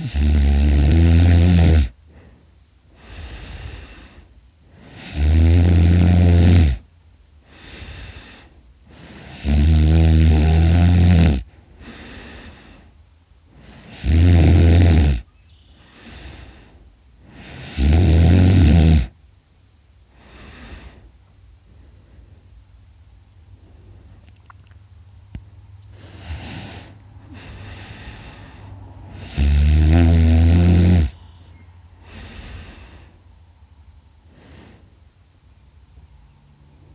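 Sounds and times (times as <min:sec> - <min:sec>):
man snoring loudly: 0:00.0 - 0:02.0, 0:04.8 - 0:06.9, 0:07.5 - 0:12.8, 0:13.6 - 0:15.3, 0:17.2 - 0:19.2, 0:26.0 - 0:31.2
breathing: 0:02.0 - 0:05.2, 0:07.4 - 0:09.5, 0:11.4 - 0:14.0, 0:15.7 - 0:17.8, 0:20.1 - 0:22.8, 0:23.5 - 0:24.3, 0:25.8 - 0:29.5, 0:31.2 - 0:35.2.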